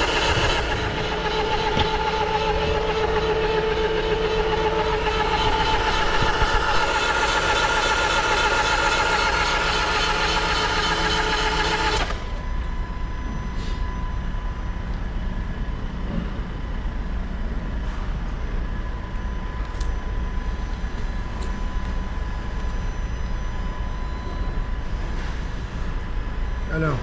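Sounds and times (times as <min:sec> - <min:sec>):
starter motor cranking engine: 0:00.0 - 0:12.3.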